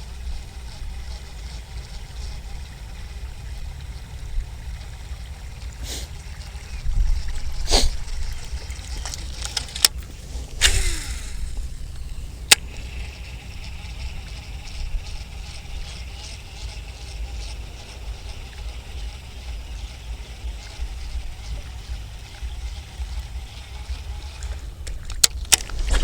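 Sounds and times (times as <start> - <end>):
splash-like hiss: 5.8 - 6.2, 7.6 - 8.1, 10.4 - 12.5
wind buffeting microphone: 6.5 - 16.0, 18.2 - 26.0
sharp clicks: 9.0 - 12.9.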